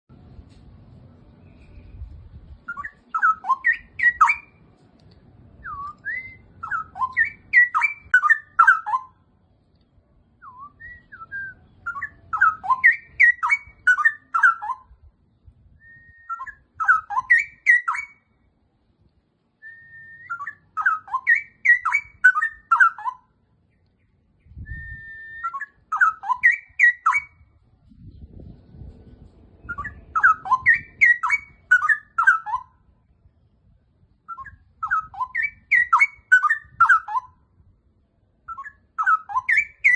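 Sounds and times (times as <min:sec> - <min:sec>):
bird singing whistled phrases: 0:01.4 - 0:04.6, 0:05.6 - 0:09.2, 0:10.4 - 0:15.0, 0:15.7 - 0:18.3, 0:19.6 - 0:27.5, 0:29.6 - 0:32.9, 0:34.2 - 0:37.4, 0:38.5 - 0:39.9.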